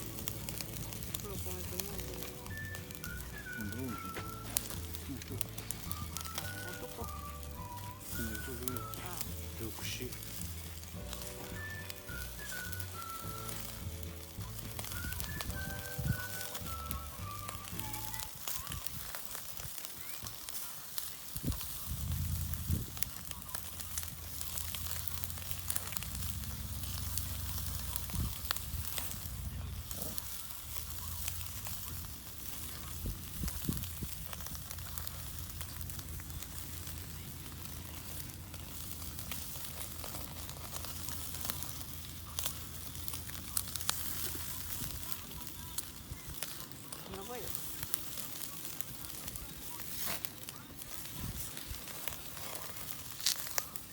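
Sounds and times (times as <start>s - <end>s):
wood fire crackling: 0.0s - 53.9s.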